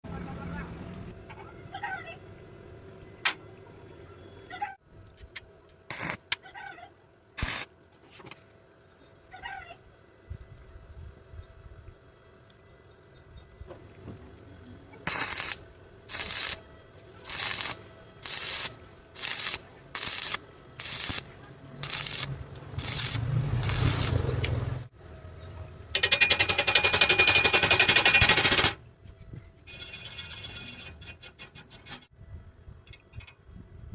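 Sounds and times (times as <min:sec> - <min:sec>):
arc welding crackle: 0:05.9 - 0:06.4, 0:07.4 - 0:07.8, 0:15.0 - 0:24.9.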